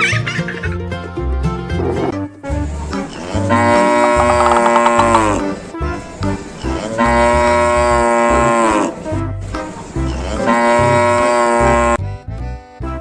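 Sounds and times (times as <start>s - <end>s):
cow mooing: 3.0s - 5.6s, 6.6s - 9.1s, 10.0s - 12.0s
music with steady beat: 3.7s - 6.4s.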